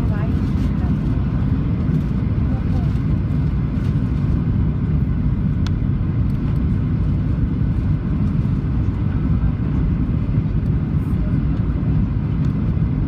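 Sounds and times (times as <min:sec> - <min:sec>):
airplane cabin rumble: 0:00.0 - 0:13.0.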